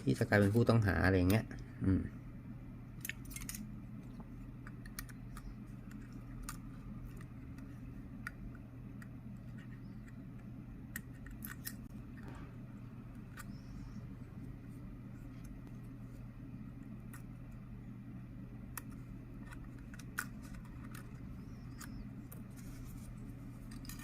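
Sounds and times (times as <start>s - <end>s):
steady low hum: 0.0s - 24.0s
small tools clicking on phone parts: 3.0s - 3.7s, 4.6s - 12.0s, 18.7s - 22.5s.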